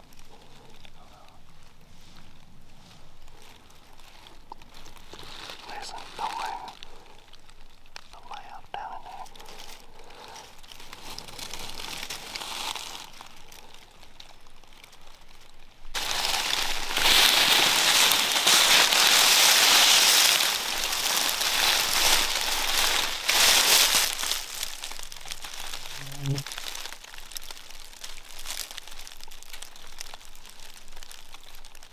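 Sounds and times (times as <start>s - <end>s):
rustling and crackling: 0.0s - 31.9s.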